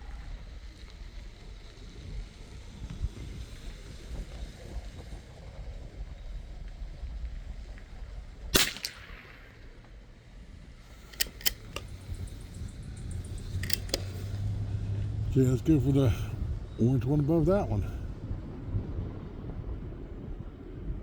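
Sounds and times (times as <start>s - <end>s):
rifle shot: 8.5s - 9.9s, 11.0s - 12.5s, 13.4s - 14.4s
rifle bolt clicks: 8.6s - 9.5s, 10.9s - 12.5s, 13.2s - 14.5s.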